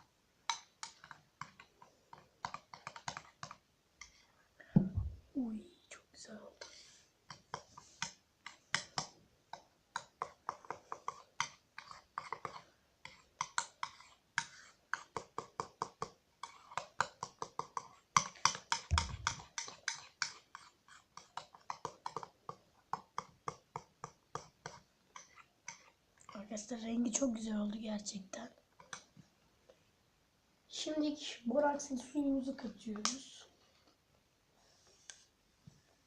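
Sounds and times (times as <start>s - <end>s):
slime stirred in a bowl: 0.4s - 4.4s, 6.4s - 29.2s
low thump: 4.8s - 5.2s.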